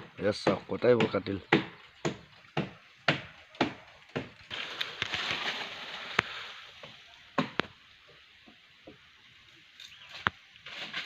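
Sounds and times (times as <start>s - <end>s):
chopping into tree branch: 0.4s - 5.6s, 7.3s - 7.8s
rustling of leaves: 1.8s - 11.0s
branch cracking: 1.9s - 7.8s, 9.7s - 11.0s.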